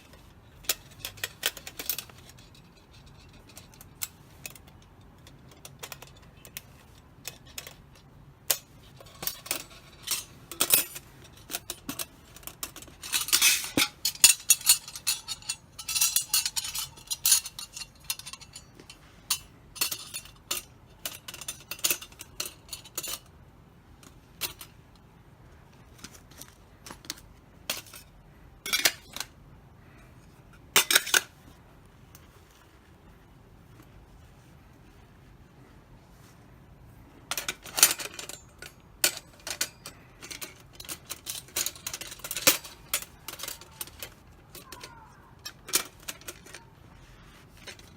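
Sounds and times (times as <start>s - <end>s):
thin metal parts clinking: 0.1s - 23.3s, 26.0s - 29.3s, 30.6s - 31.6s, 37.3s - 47.9s.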